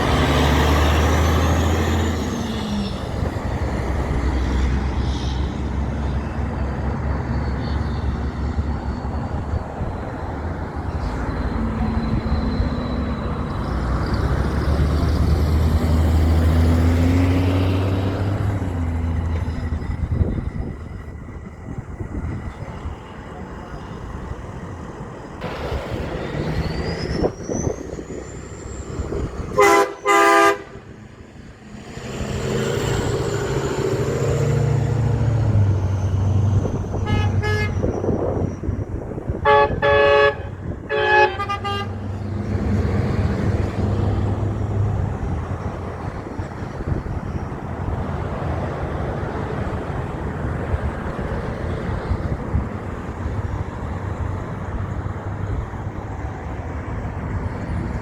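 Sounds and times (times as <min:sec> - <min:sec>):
truck engine rumbling: 0:00.0 - 0:58.0
truck horn blasts: 0:29.5 - 0:30.9, 0:37.0 - 0:38.2, 0:39.3 - 0:42.2.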